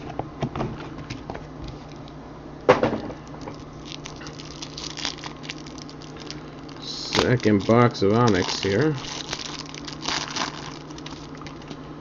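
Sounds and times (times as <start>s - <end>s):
card packs rustling: 3.3s - 11.8s.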